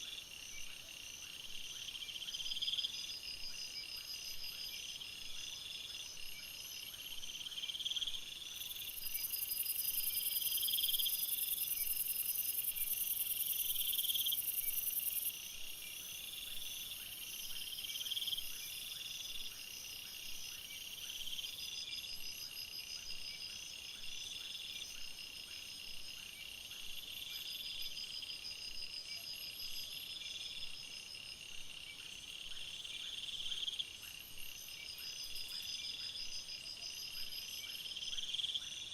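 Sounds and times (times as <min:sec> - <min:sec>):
cricket chirping trill: 0:00.0 - 0:38.9.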